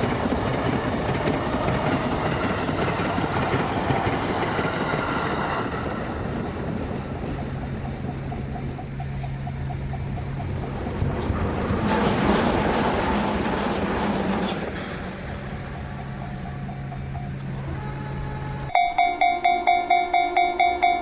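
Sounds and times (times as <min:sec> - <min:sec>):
train passing: 0:00.0 - 0:21.0
level crossing warning bell: 0:16.7 - 0:21.0.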